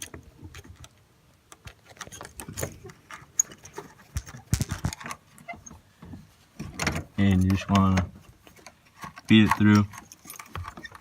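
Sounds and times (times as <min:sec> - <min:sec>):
cable clicking and scraping in tube: 0:06.8 - 0:11.0.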